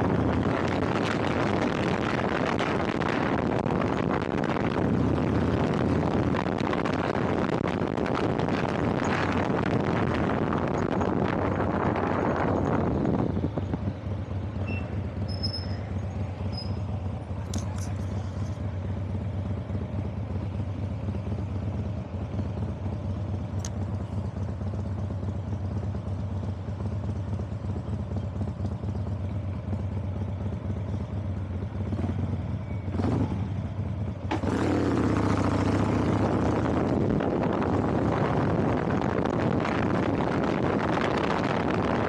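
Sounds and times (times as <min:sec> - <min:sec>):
vehicle engine running: 0:00.0 - 0:42.0
wind and road noise: 0:00.0 - 0:42.0.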